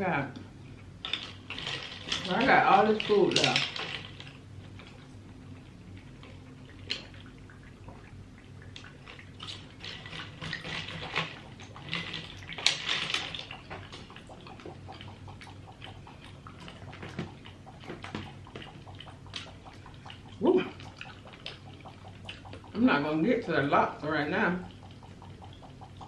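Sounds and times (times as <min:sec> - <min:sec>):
wet chewing and smacking: 0:04.7 - 0:23.6, 0:24.5 - 0:26.0.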